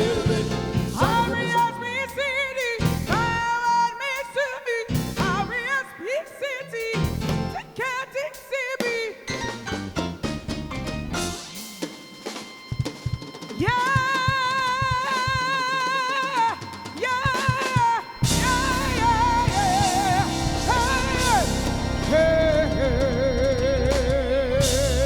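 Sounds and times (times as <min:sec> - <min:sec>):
person singing with vibrato: 0:00.0 - 0:09.3, 0:13.6 - 0:25.0
live soul band playing: 0:00.0 - 0:25.0.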